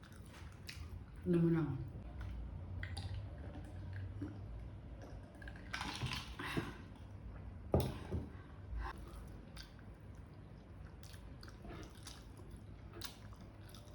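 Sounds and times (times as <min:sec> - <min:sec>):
close chewing: 0:08.9 - 0:13.9.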